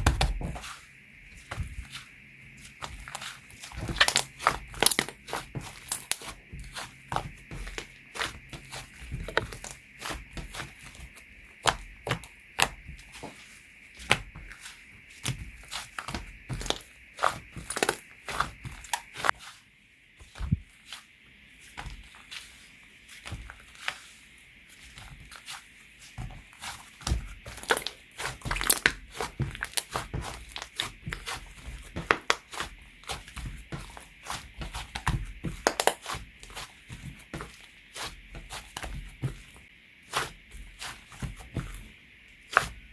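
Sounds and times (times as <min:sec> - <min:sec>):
soft thuds of folded slime: 0:00.0 - 0:19.6, 0:20.2 - 0:42.9
slime squishing and popping: 0:15.2 - 0:19.3, 0:26.6 - 0:36.7.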